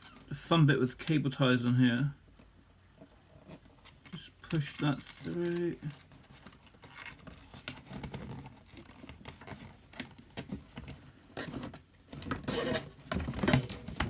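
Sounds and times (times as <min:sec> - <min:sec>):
plastic scratching on plastic: 0:03.1 - 0:14.0.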